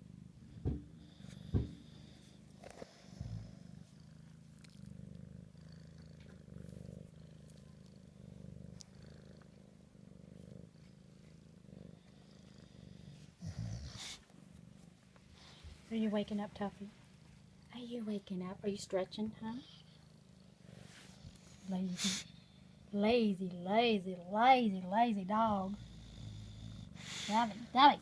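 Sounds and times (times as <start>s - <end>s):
dog snoring: 1.0s - 9.5s, 11.4s - 14.2s, 25.4s - 27.8s.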